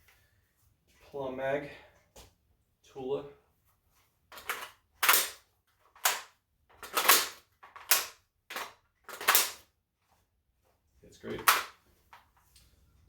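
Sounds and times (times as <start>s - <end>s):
rifle magazine clacking: 6.0s - 9.6s.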